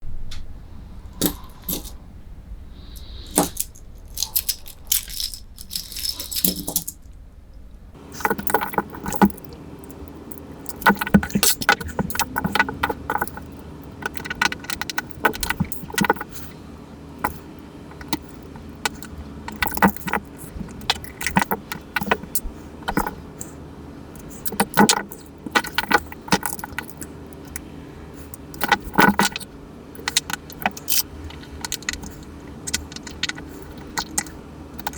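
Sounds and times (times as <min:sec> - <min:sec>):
wristwatch metallic clicks and rattles: 0:01.2 - 0:02.0, 0:02.9 - 0:07.0.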